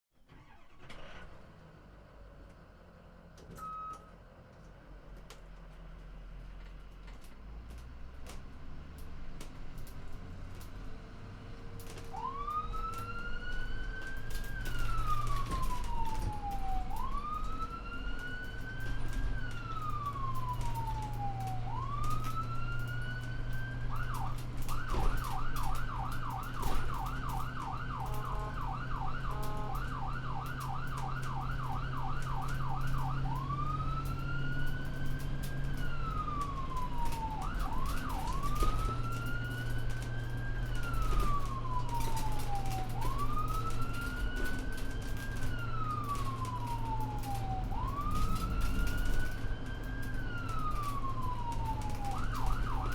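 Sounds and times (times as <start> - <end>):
ambulance siren wailing and yelping: 0.3 - 1.2, 11.8 - 52.9.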